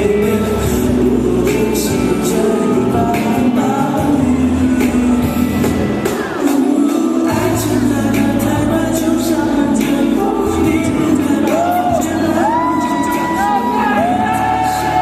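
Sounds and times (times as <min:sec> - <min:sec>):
person singing pop ballad: 0:00.0 - 0:15.0.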